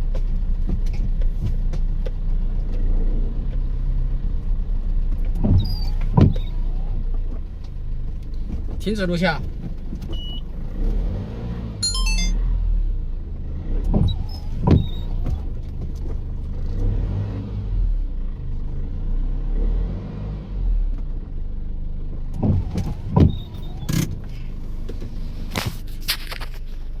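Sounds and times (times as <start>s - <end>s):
car driving with low rumble: 0.0s - 27.0s.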